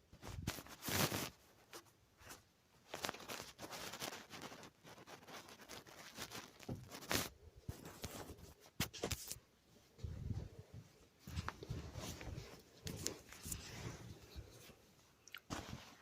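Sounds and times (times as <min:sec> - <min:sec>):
rustling and crackling: 0:00.0 - 0:16.0.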